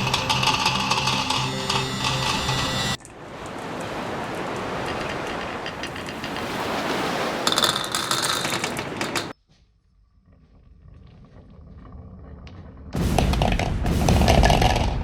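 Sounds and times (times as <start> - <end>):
marbles rolling on wooden track: 0.0 - 3.1, 4.8 - 9.4.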